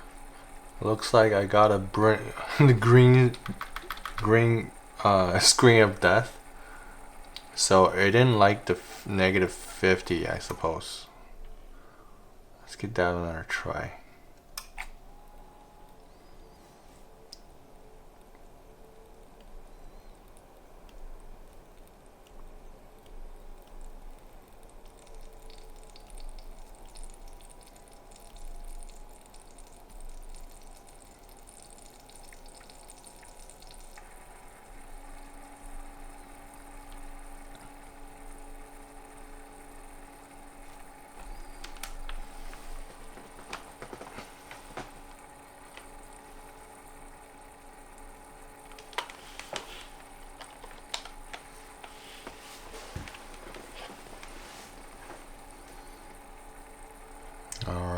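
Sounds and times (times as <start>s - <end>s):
computer fans whirring: 0.0s - 57.9s
sharp clicks: 3.1s - 4.6s, 41.2s - 42.3s.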